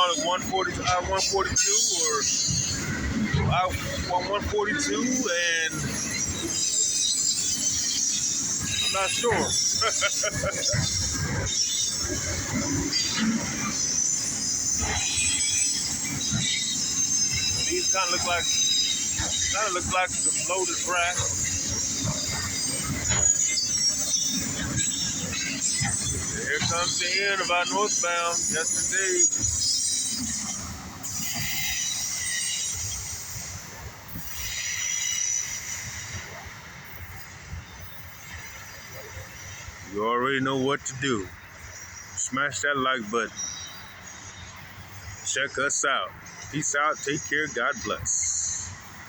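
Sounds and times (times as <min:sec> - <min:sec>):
train wheels rumbling on rail: 0:00.0 - 0:49.0
high-pitched wheel squeal: 0:04.8 - 0:40.1.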